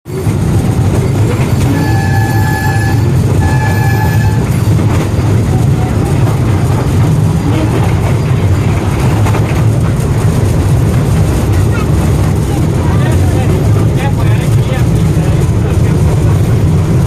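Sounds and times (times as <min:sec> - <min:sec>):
toy train rumbling: 0:00.1 - 0:17.0
toy train horn: 0:01.6 - 0:04.6.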